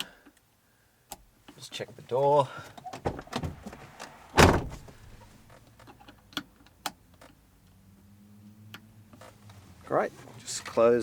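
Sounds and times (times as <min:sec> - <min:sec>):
car door shutting thud: 0:03.0 - 0:05.1.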